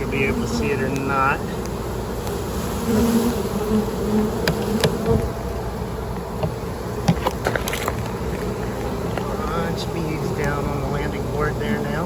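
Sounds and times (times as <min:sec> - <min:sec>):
bee swarm buzzing: 0:00.0 - 0:12.0.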